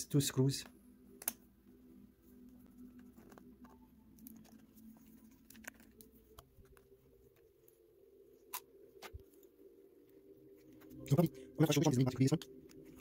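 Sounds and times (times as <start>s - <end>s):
parts being handled: 2.4s - 7.8s.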